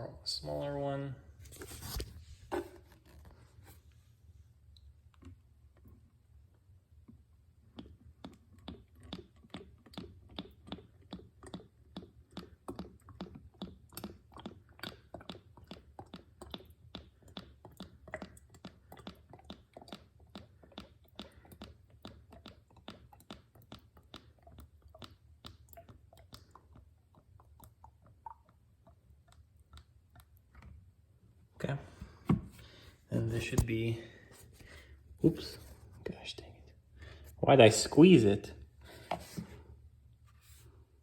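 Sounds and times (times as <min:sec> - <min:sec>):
oil glugging from a jug: 0:07.7 - 0:30.7.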